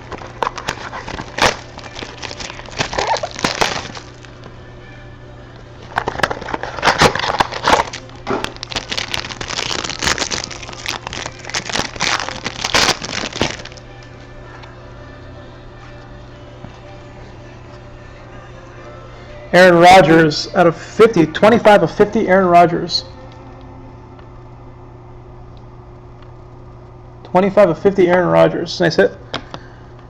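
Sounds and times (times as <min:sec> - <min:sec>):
wrapper and cardboard tearing: 0:00.0 - 0:04.3, 0:05.9 - 0:13.8
steady low hum: 0:00.0 - 0:30.0.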